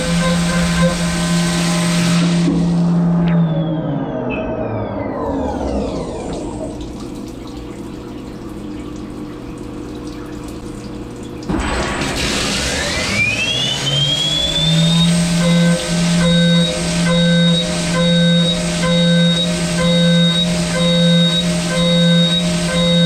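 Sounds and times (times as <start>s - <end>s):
coolant running: 0.0s - 23.0s
machine hum: 0.0s - 23.0s
milling spindle whine: 12.9s - 23.0s.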